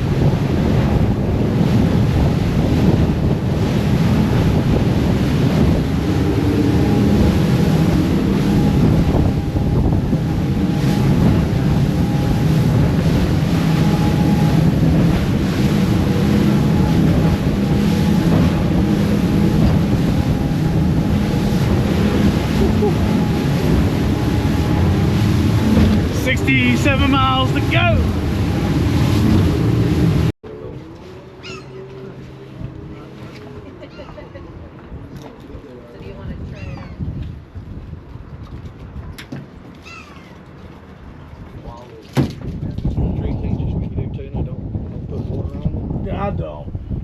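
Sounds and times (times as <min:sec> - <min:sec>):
wind buffeting microphone: 0:00.0 - 0:30.4, 0:34.1 - 0:47.0
boat engine drone: 0:00.0 - 0:42.1
water rushing against hull: 0:00.0 - 0:47.0.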